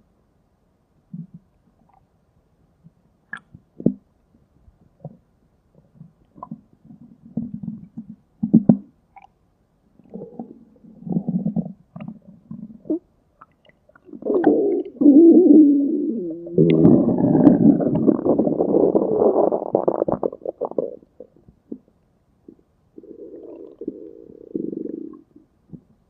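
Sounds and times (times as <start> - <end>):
stomach growling: 10.0 - 21.9, 22.5 - 25.9.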